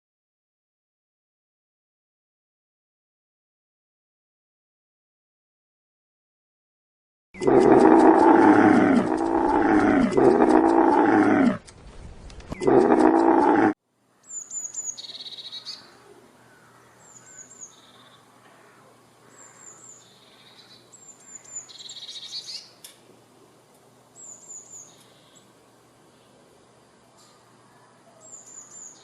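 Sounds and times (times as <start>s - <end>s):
deep animal roar: 7.4s - 11.6s, 12.5s - 13.8s
songbird singing: 12.2s - 29.0s.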